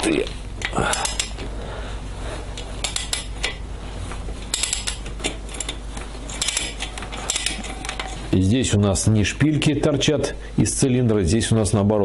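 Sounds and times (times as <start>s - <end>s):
wrench clicking on metal bolts: 2.8s - 3.3s, 4.5s - 7.6s.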